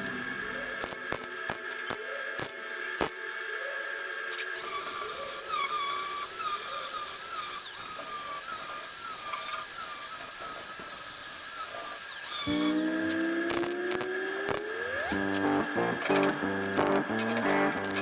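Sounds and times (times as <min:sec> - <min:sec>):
grinder whining on sheet metal: 0:04.6 - 0:18.0.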